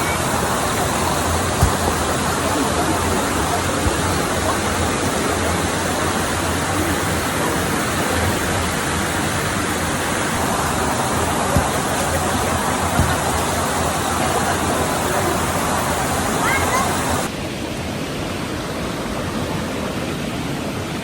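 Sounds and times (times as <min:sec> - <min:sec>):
waterfall rushing: 0:00.0 - 0:21.0
brief thump: 0:01.6 - 0:02.3, 0:11.5 - 0:12.0, 0:12.9 - 0:13.5.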